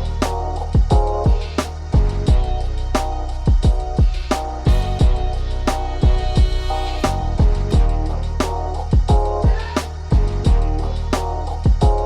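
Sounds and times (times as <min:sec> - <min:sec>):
sustained bass: 0:00.0 - 0:12.0
kick drums: 0:00.7 - 0:02.5, 0:03.5 - 0:05.2, 0:06.0 - 0:06.7, 0:07.4 - 0:08.0, 0:08.9 - 0:10.7, 0:11.6 - 0:12.0.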